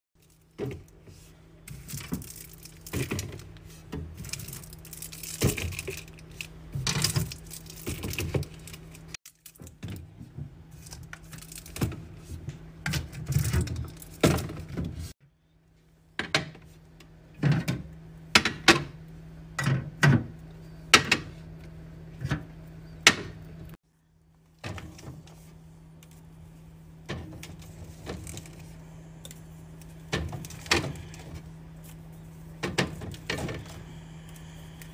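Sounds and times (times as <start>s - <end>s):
low hum: 20.4s - 34.9s.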